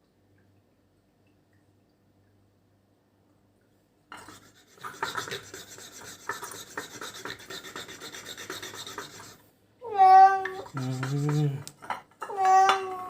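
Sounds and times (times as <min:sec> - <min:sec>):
rasping scraping and rubbing: 0:04.2 - 0:09.4, 0:10.6 - 0:11.6.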